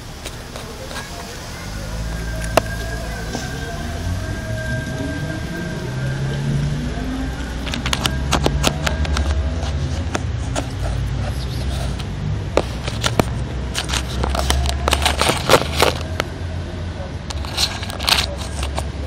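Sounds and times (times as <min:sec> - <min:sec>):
scratchy rustling: 0:07.6 - 0:16.1.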